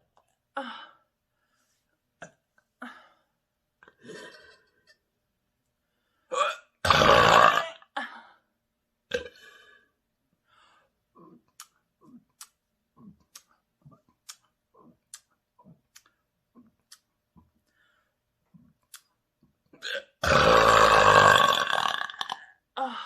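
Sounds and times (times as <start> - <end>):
loud long burp: 6.3 - 7.9, 9.1 - 9.4, 19.8 - 22.6.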